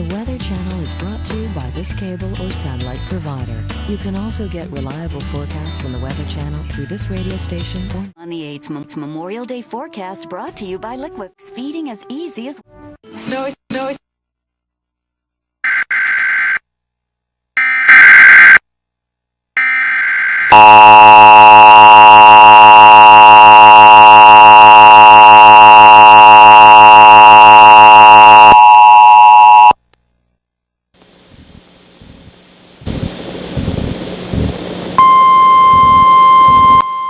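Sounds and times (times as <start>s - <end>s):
screechy digital data bursts: 17.9s - 18.6s
loud two-tone attention signal: 20.5s - 29.8s, 35.0s - 37.0s.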